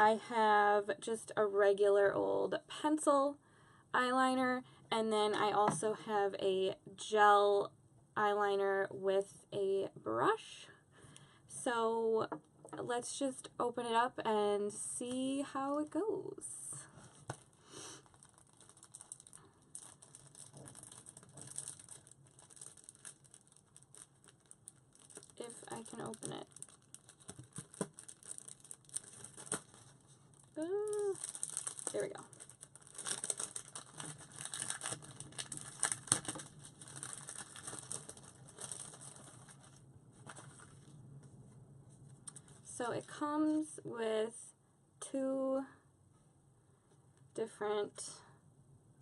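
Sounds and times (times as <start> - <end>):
packaging ticking and crinkling: 17.0 - 40.9, 42.2 - 42.6.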